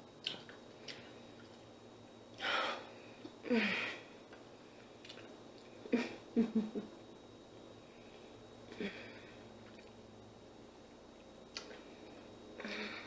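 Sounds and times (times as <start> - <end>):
woman breathing: 2.4 - 4.2, 7.8 - 9.5, 12.6 - 13.0.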